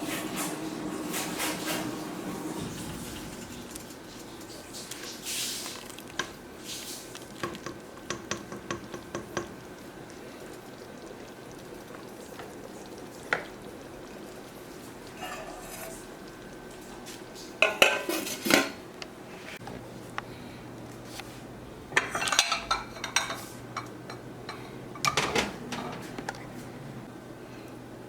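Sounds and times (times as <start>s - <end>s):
spoon knocking and scraping pot: 7.4s - 9.6s.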